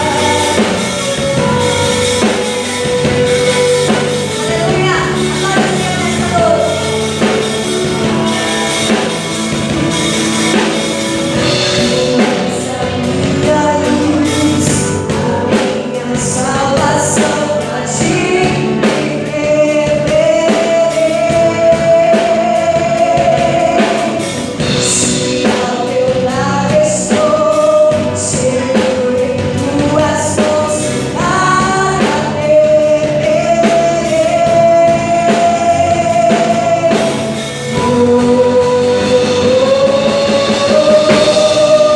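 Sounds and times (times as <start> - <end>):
band playing gospel song: 0.0 - 41.9
woman singing: 0.0 - 41.9.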